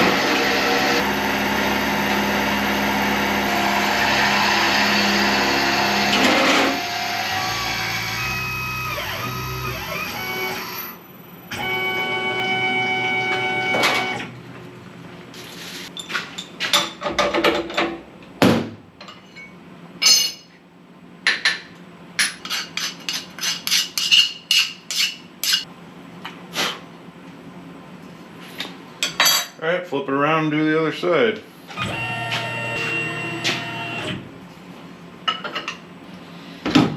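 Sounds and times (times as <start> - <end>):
machine whining: 0.0 - 14.4, 31.7 - 34.3
metal tools clinking and knocking: 19.0 - 20.5.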